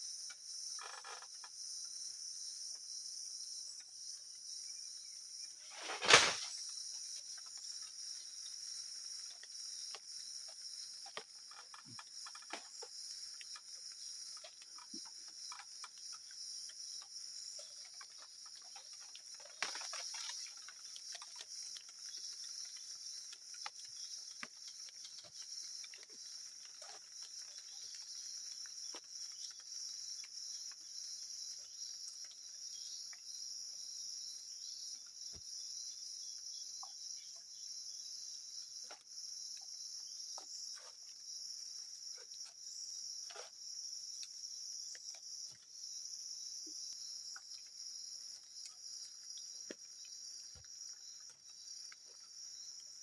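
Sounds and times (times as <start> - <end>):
high-pitched insect chorus trilling: 0.0 - 53.0
small clicks and snaps: 17.8 - 30.8.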